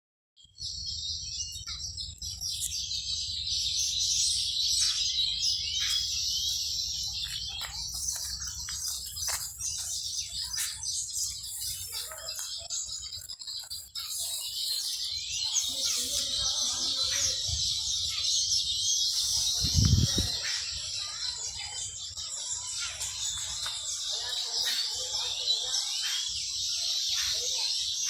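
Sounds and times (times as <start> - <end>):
small birds chirping: 0.4 - 28.0.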